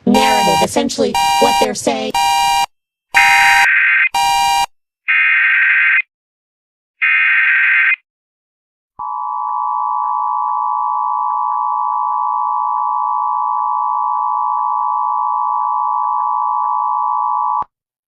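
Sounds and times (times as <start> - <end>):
steady dual alert tone: 0.1 - 4.7.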